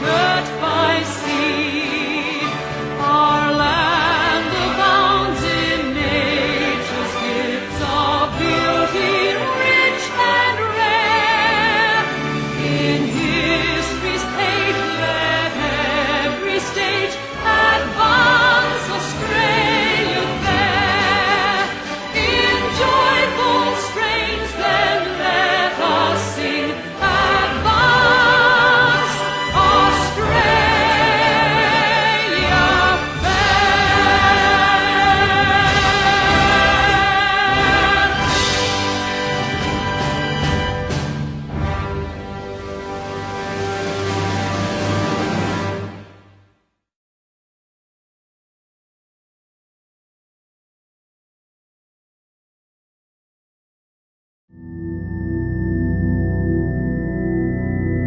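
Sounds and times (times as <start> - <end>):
choir singing an anthem: 0.0 - 40.9
sustained accompaniment: 0.0 - 46.2, 54.6 - 58.0.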